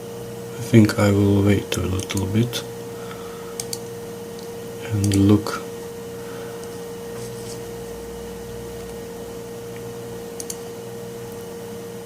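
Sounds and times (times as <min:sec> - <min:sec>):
steady hum: 0:00.0 - 0:12.0
faint clicks: 0:03.6 - 0:05.2, 0:09.7 - 0:10.7.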